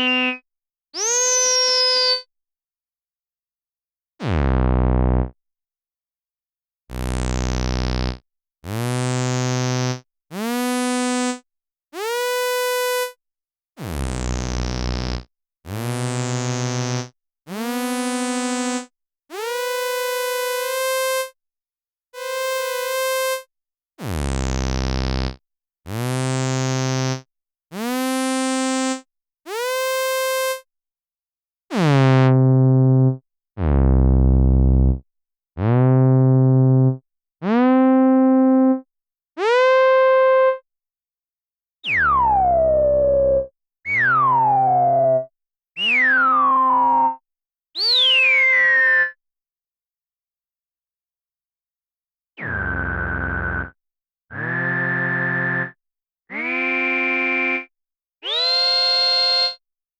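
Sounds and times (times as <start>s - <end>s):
bass synthesizer notes: 33.8s - 35.0s, 41.9s - 45.3s.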